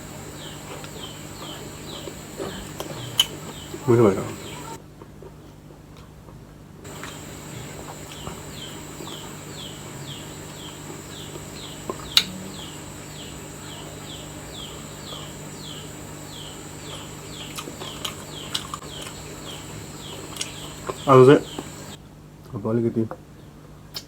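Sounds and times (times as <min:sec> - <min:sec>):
high-pitched whine: 0:06.9 - 0:22.0
small animal chirping: 0:06.9 - 0:22.0.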